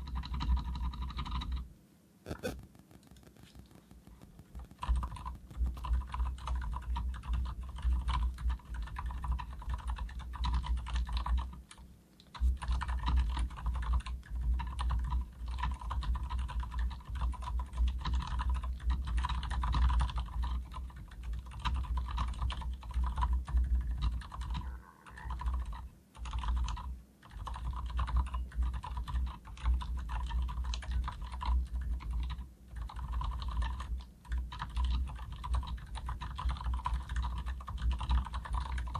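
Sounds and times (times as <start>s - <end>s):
muted mechanical keyboard typing: 0.0s - 1.7s, 2.3s - 38.9s.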